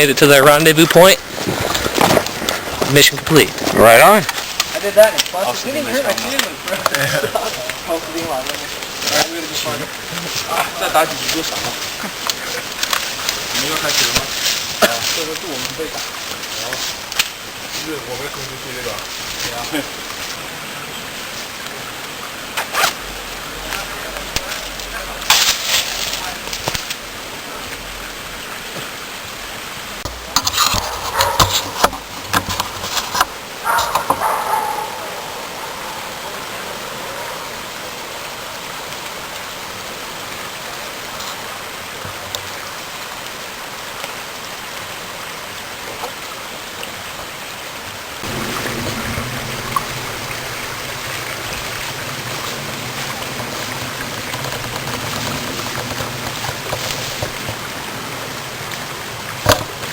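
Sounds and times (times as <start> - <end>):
river water rushing: 0.0 - 59.9
rustling and knocking: 30.1 - 34.3, 54.1 - 57.7.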